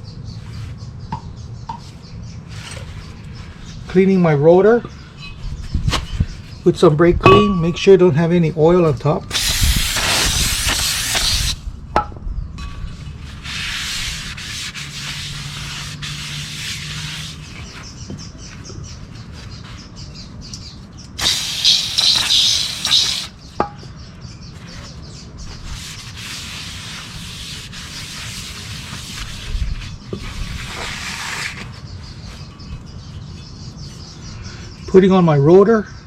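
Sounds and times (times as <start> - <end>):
aerosol spray hissing: 9.3 - 11.6, 21.2 - 23.3
rubbing: 13.3 - 17.8, 21.2 - 23.3, 25.6 - 31.8.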